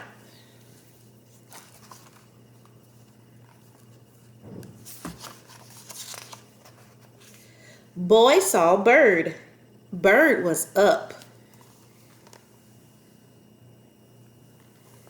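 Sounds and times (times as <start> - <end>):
book pages rustling: 0.8 - 7.4, 11.4 - 12.5.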